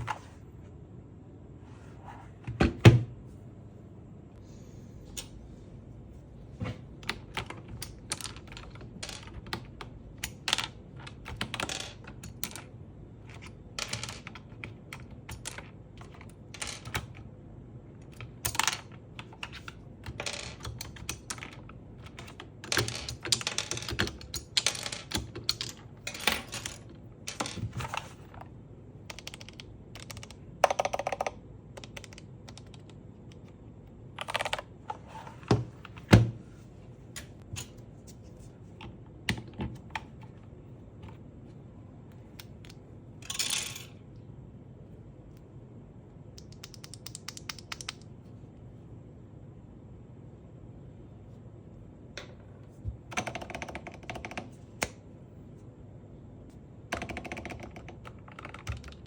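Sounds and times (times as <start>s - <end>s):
mechanical keyboard typing: 29.1s - 33.0s, 46.4s - 48.0s, 53.1s - 54.6s, 56.9s - 59.0s.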